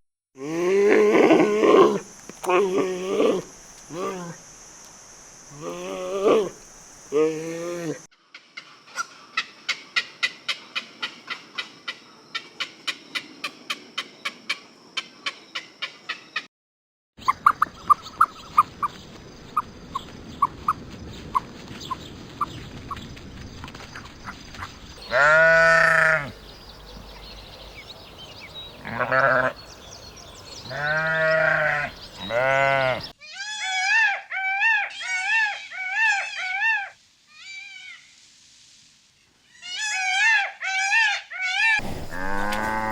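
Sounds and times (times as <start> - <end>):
sheep bleating: 25.0 - 26.3, 28.8 - 29.6, 30.7 - 33.5, 42.1 - 42.9.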